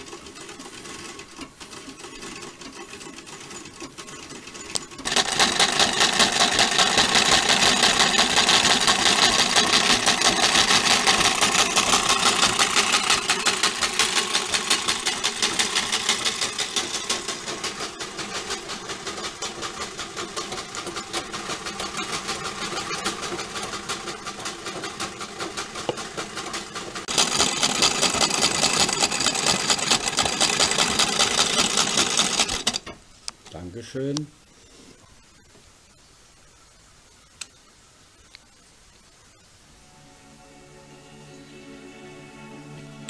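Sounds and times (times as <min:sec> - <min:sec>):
sewing machine clattering: 0:00.0 - 0:33.0.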